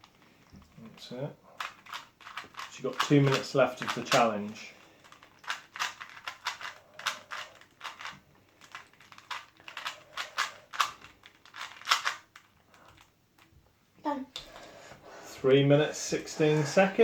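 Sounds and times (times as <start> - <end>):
puzzle cube clicking and rattling: 1.6 - 13.1.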